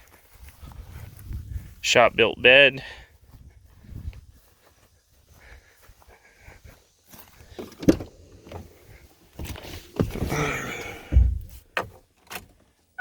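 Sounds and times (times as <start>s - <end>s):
heavy deep thump: 10.0s - 11.6s.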